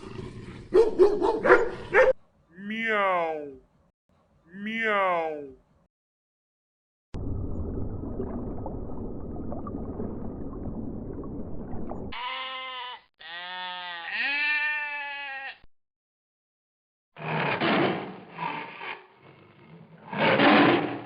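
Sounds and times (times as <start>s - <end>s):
sheep bleating: 12.1s - 15.7s.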